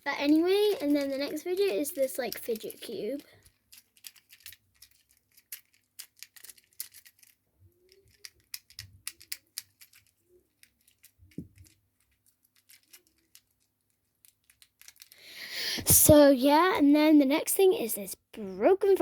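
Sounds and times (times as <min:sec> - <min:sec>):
fidget cube plastic clicks: 0:00.2 - 0:15.2.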